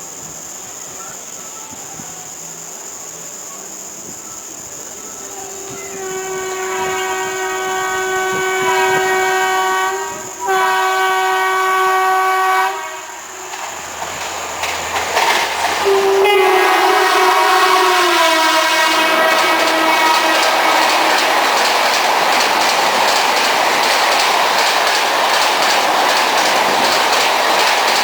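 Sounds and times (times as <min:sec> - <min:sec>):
train running noise: 0:00.0 - 0:28.0
locomotive horn blasts: 0:05.5 - 0:13.5, 0:15.8 - 0:21.9
wheels clattering on rails: 0:13.2 - 0:28.0.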